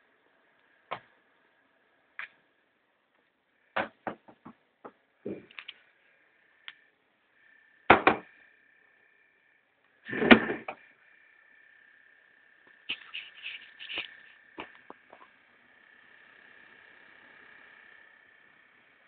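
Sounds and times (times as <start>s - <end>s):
laptop fan high-pitched whine: 0.0s - 19.0s
sharp knocks: 3.8s - 4.6s, 7.9s - 8.3s.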